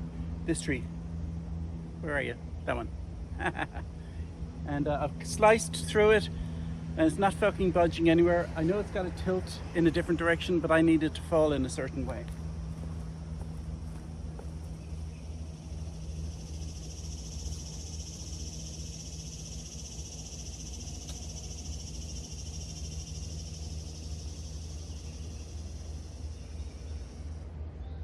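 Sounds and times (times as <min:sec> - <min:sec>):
steady low hum: 0:00.0 - 0:28.0
insect buzzing: 0:12.2 - 0:27.4.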